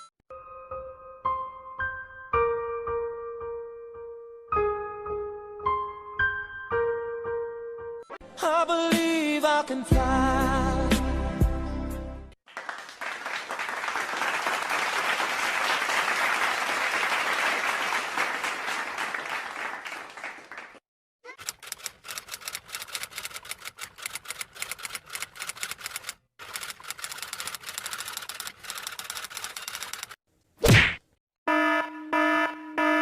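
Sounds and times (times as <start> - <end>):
applause: 12.4 - 20.8.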